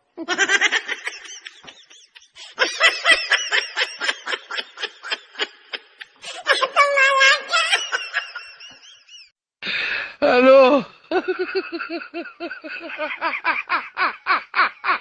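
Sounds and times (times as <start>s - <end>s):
high-pitched cackling laughter: 0.2s - 9.1s.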